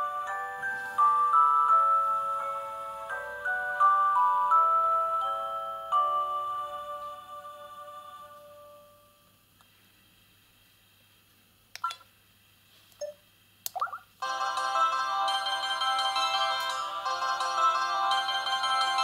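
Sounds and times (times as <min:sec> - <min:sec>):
phone ringtone melody: 0:00.0 - 0:07.1, 0:14.2 - 0:19.0
phone key beeps and clicks: 0:11.8 - 0:12.0.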